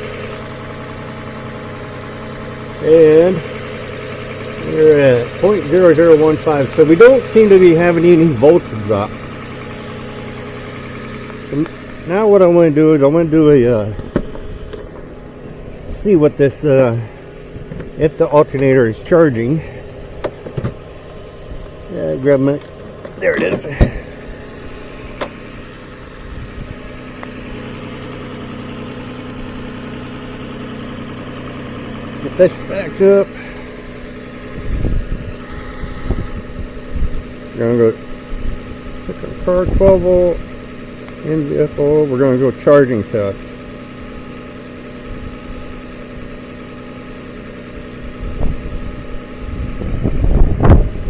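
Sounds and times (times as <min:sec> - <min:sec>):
car engine idling: 0:00.0 - 0:51.0
low rumbling: 0:04.4 - 0:28.4, 0:32.2 - 0:42.0, 0:48.0 - 0:51.0.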